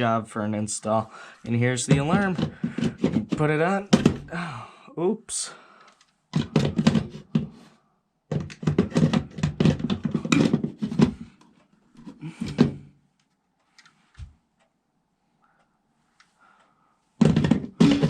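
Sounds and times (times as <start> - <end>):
plastic rubbing and clicking: 1.8 - 4.3, 8.3 - 12.6.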